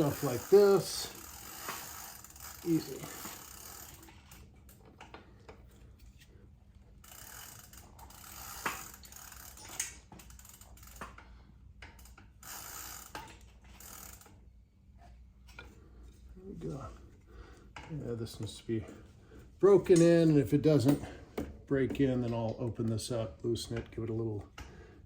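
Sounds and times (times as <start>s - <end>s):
pedal wrench metal clicks: 0.0s - 6.2s, 7.0s - 14.4s.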